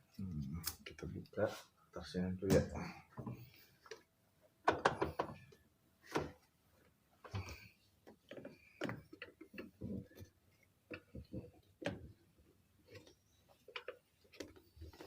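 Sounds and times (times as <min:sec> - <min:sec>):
plastic clicks and knocks: 0:04.6 - 0:06.4.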